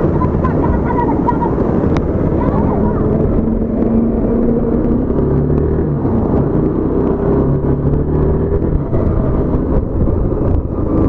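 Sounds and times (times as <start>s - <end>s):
motorcycle engine running: 0.0s - 11.0s
wind and road noise: 0.0s - 11.0s.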